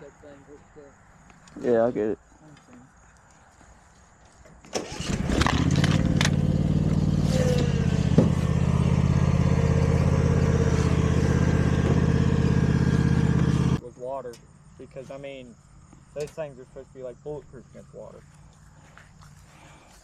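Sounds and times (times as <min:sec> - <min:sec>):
engine starting and idling: 0:04.7 - 0:13.8.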